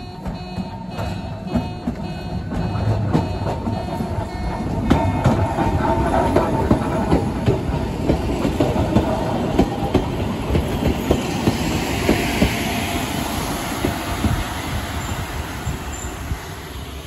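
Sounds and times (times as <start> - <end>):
electric train running past: 0.0 - 17.0
wheels clacking over rail joints: 0.0 - 17.0.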